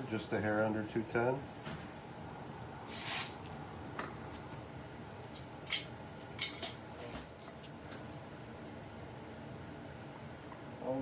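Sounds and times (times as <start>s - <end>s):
hiss of escaping air: 2.9s - 3.4s.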